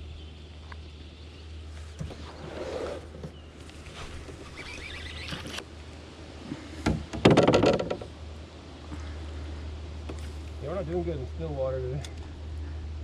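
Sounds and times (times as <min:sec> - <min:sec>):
steady low hum: 0:00.0 - 0:13.0
knocks and rattles on canoe hull: 0:06.8 - 0:08.2.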